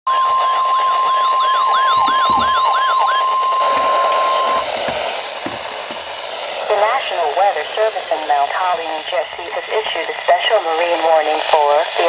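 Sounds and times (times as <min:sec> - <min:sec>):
warbling electronic alarm: 0:00.1 - 0:09.3
steady alarm tone: 0:00.1 - 0:09.4
radio static hiss: 0:03.7 - 0:12.0.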